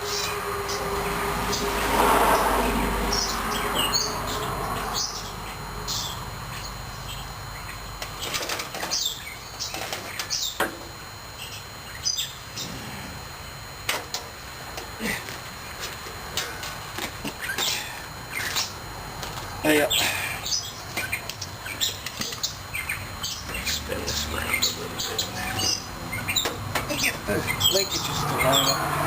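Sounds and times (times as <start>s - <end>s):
small birds chirping: 3.0s - 12.8s, 16.4s - 18.9s, 19.5s - 28.9s.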